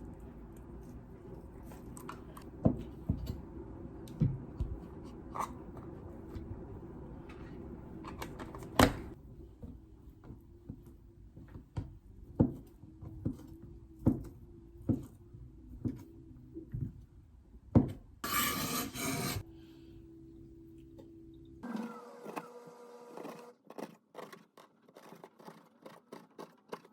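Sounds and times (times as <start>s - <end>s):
scratchy rasp: 18.2s - 19.4s, 23.2s - 26.9s.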